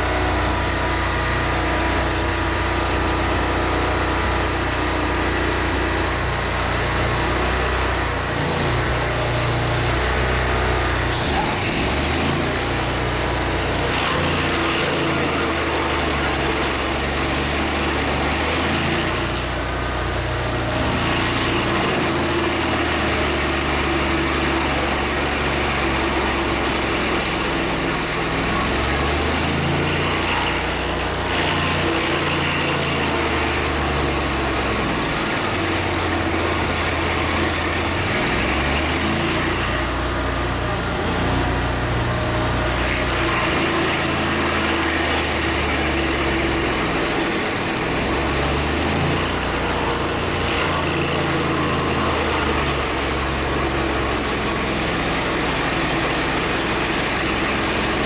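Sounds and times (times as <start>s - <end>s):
small engine running: 0.0s - 58.0s.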